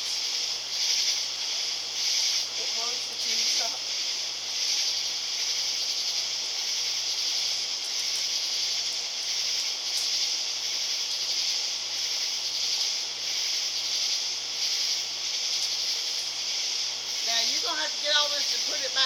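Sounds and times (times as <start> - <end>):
night insects chorus: 0.0 - 19.0.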